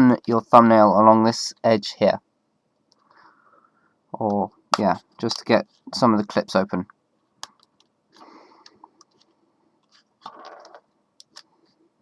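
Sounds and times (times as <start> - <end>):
plastic crackling and scraping: 7.4 - 11.6.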